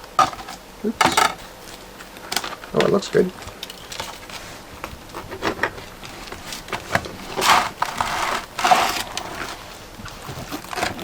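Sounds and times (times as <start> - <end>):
meat scraping and tearing: 3.9 - 11.0.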